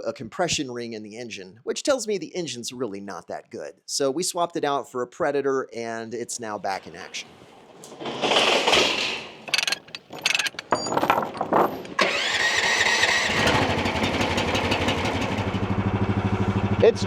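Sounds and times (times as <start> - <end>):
small engine starting and running: 7.7 - 17.0.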